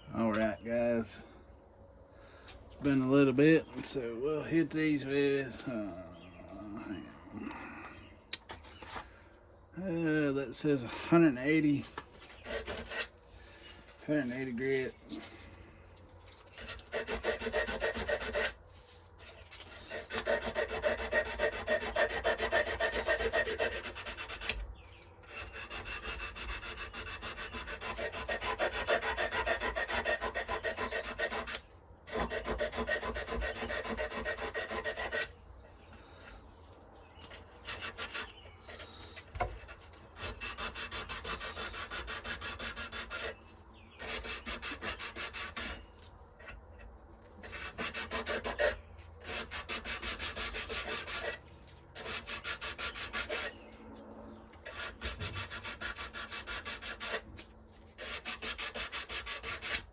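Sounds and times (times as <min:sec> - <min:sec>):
sandpaper scrubbing on metal: 0:10.2 - 0:15.5, 0:16.1 - 0:35.3, 0:37.0 - 0:46.6, 0:47.2 - 0:53.7, 0:54.6 - 0:59.9.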